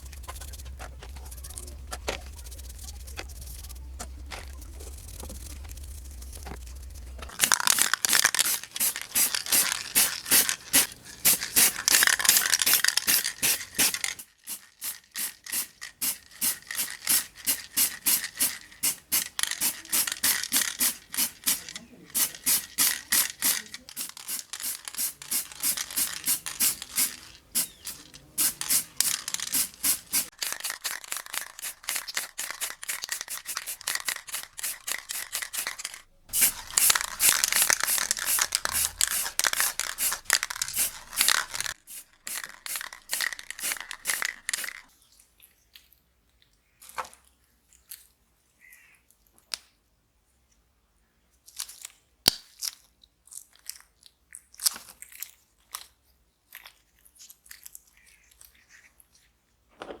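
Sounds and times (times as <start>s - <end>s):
scratchy scraping strokes: 0.0s - 7.6s, 18.3s - 44.7s.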